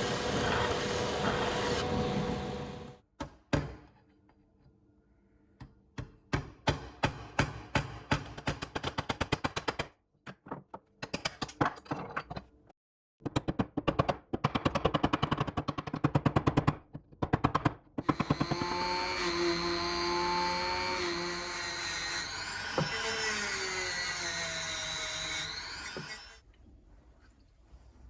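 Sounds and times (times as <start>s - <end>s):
power tool motor running: 0.0s - 3.0s.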